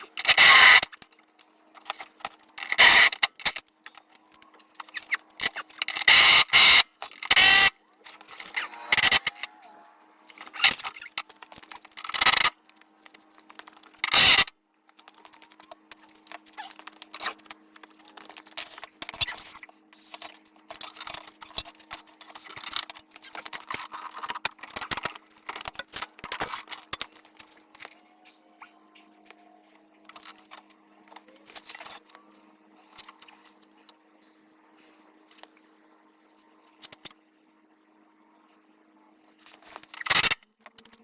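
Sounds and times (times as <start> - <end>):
metal tools clinking and scraping: 15.1 - 32.2.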